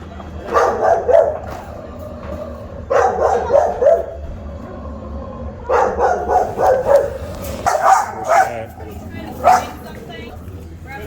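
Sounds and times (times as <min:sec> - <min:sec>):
dog barking: 0:00.4 - 0:01.8, 0:02.8 - 0:04.3, 0:05.6 - 0:08.8, 0:09.4 - 0:09.9.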